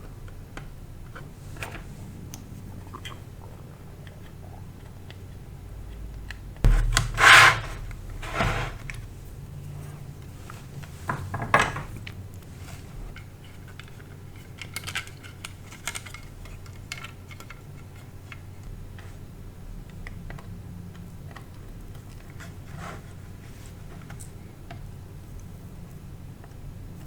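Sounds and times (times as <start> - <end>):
low steady hum: 2.0 - 12.4.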